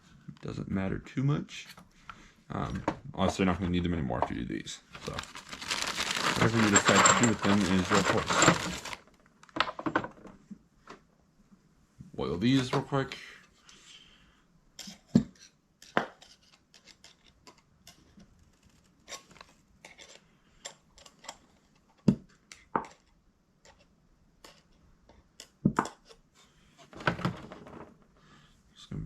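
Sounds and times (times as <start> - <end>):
metal parts clicking on workbench: 6.0 - 9.0.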